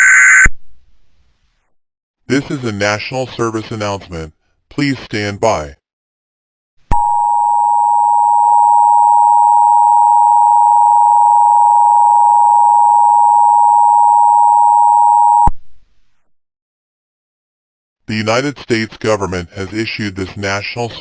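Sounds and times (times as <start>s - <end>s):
loud two-tone alarm: 6.9s - 15.5s.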